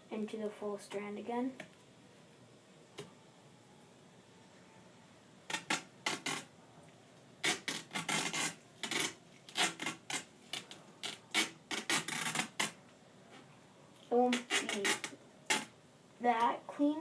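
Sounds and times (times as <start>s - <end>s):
tape pulled off roll: 7.4s - 12.8s.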